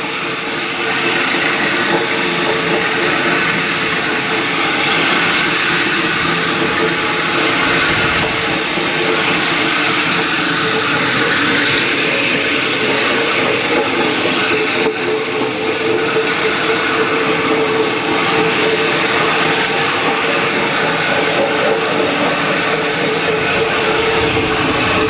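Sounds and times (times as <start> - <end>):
motor whine: 4.7 - 14.6, 17.9 - 25.0.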